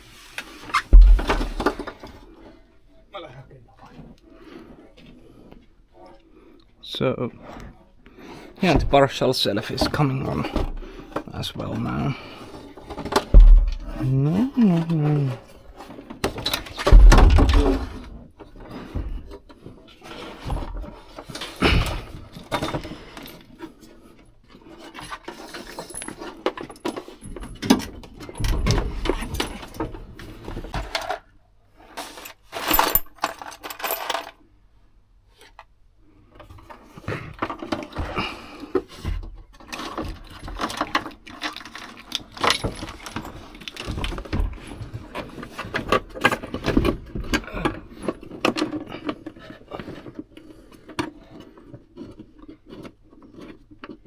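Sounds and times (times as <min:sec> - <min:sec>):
knocks and metallic clinks: 0:00.9 - 0:02.0, 0:13.1 - 0:14.2, 0:16.4 - 0:18.2, 0:25.5 - 0:30.0, 0:42.0 - 0:44.7.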